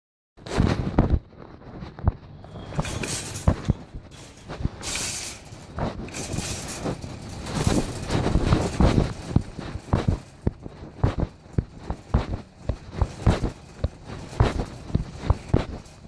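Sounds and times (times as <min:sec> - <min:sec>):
phone microphone rubbing fabric: 0:00.4 - 0:16.0.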